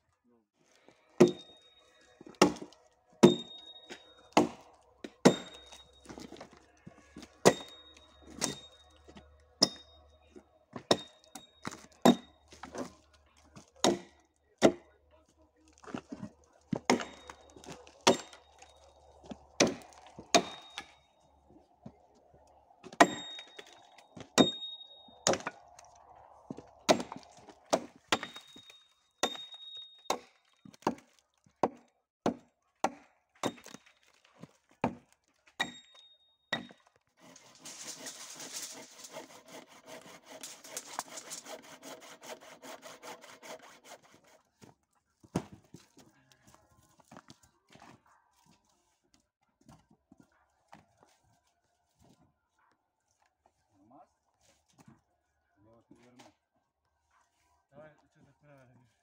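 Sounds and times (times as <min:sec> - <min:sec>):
axe chopping wood: 0:01.2 - 0:01.5, 0:02.2 - 0:06.6, 0:07.2 - 0:08.6, 0:10.7 - 0:12.9, 0:13.6 - 0:14.8, 0:15.8 - 0:21.0, 0:22.8 - 0:25.8, 0:26.5 - 0:35.9, 0:36.6 - 0:38.0, 0:45.3 - 0:45.7.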